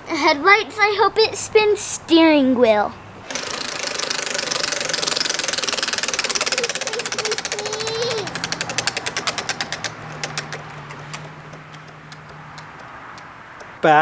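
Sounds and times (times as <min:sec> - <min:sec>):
prize wheel ticking: 0:03.2 - 0:14.0.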